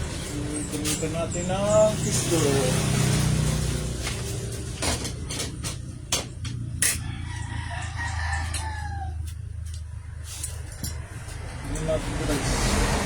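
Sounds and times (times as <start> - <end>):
rooster crowing: 6.6 - 9.6.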